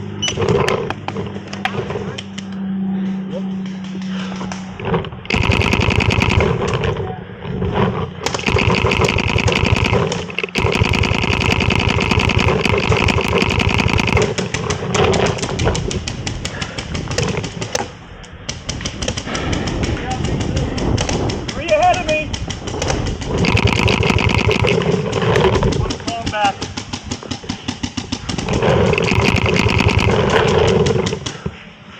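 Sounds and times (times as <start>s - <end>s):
paintball markers firing: 4.4s - 7.2s, 7.9s - 31.5s.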